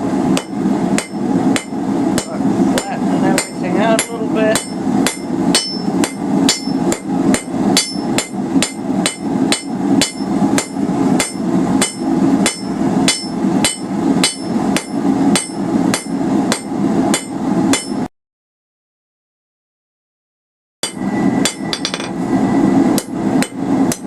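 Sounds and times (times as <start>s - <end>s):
hammer striking metal on anvil: 0.3s - 18.0s, 20.8s - 22.2s.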